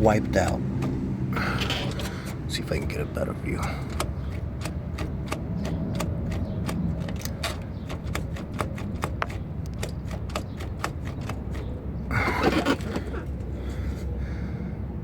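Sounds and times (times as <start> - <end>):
driveshaft clicking and knocking: 0.0 - 13.2
scraping clatter: 0.8 - 2.4, 3.6 - 13.5.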